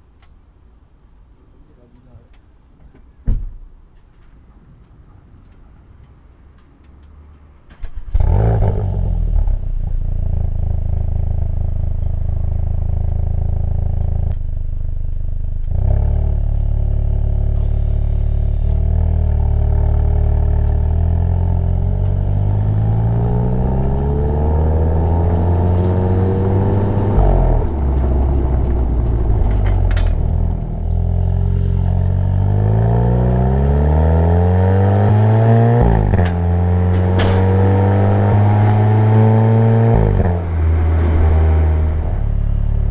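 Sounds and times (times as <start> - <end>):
car engine accelerating through gears: 7.9 - 14.4, 15.0 - 42.9.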